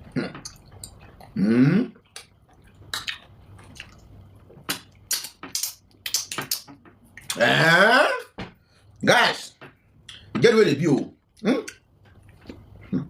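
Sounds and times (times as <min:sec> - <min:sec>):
wet eating mouth noises: 0:00.0 - 0:08.3.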